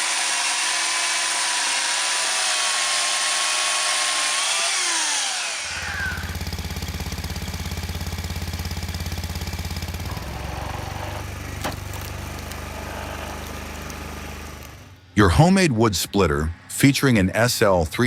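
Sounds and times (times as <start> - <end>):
chainsaw running: 0.0 - 15.0
small engine thudding: 5.5 - 14.9.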